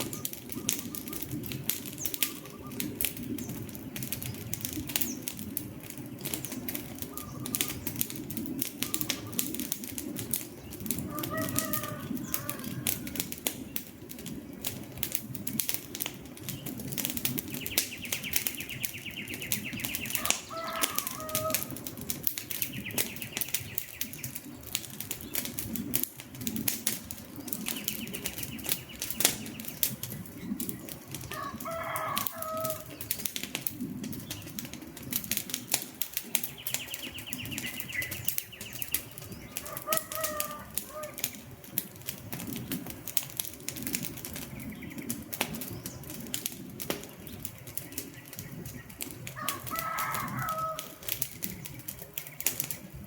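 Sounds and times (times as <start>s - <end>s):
bird calling: 0.0s - 5.2s, 6.1s - 9.7s, 10.6s - 13.2s, 17.4s - 21.9s, 36.4s - 41.5s
campfire crackling and popping: 0.0s - 53.0s
low rush of flame: 0.0s - 53.0s.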